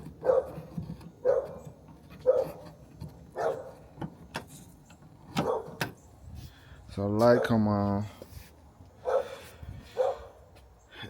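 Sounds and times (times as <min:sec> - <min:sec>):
dog barking: 0:00.2 - 0:00.6, 0:01.2 - 0:01.6, 0:02.2 - 0:02.6, 0:03.3 - 0:03.8, 0:05.4 - 0:05.8, 0:09.0 - 0:10.4.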